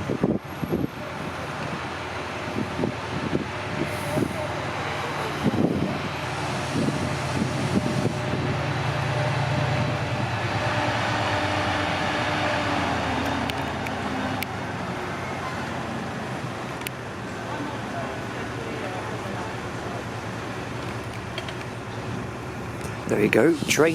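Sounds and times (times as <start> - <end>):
diesel locomotive engine hum: 0.0 - 23.9.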